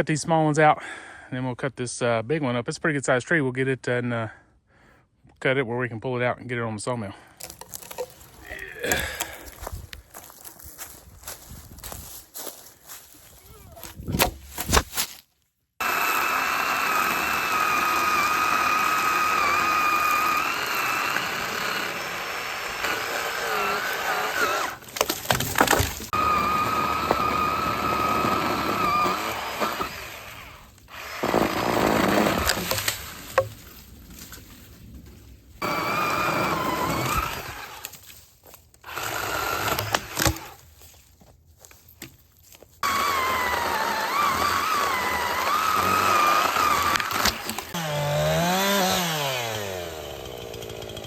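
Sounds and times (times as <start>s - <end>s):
electric chainsaw cutting wood: 15.8s - 33.5s, 35.6s - 38.0s, 38.8s - 40.6s, 42.8s - 51.0s.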